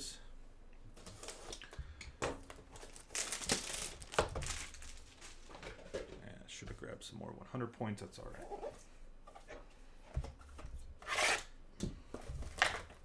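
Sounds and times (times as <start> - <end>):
plastic packaging crinkling: 1.0 - 1.8, 2.4 - 6.1.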